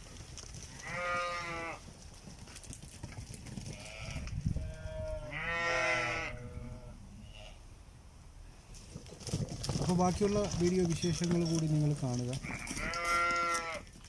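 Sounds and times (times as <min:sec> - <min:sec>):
goats bleating: 0:00.8 - 0:01.8, 0:03.8 - 0:07.6, 0:12.4 - 0:13.8.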